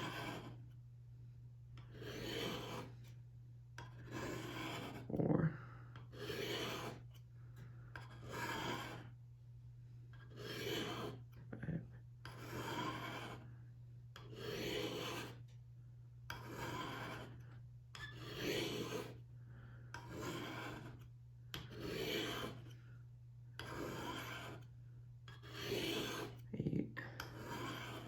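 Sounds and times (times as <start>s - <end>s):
knife scraping on sharpener rods: 0.0s - 0.6s, 1.8s - 3.2s, 3.8s - 5.4s, 6.1s - 7.1s, 8.0s - 9.1s, 10.2s - 13.4s, 14.2s - 15.4s, 16.3s - 17.4s, 18.0s - 19.2s, 20.0s - 21.0s, 21.6s - 22.8s, 23.6s - 24.7s, 25.3s - 28.0s
steady low hum: 0.1s - 10.2s.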